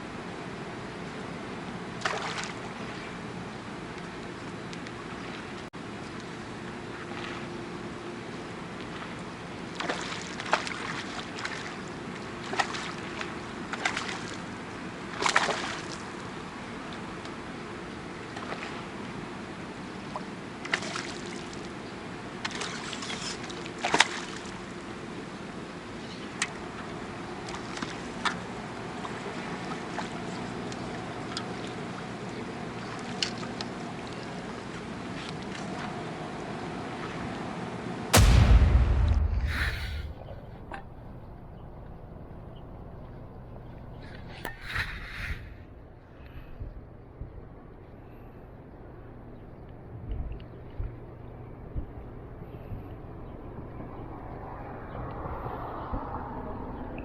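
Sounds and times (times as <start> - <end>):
water lapping and sloshing: 0.0 - 38.2, 40.2 - 57.0
sharp splashes and clicks: 2.0 - 2.6.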